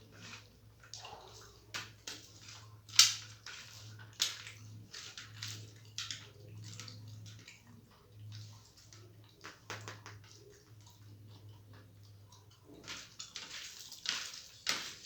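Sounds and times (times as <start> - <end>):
person chewing and smacking: 5.8 - 15.0.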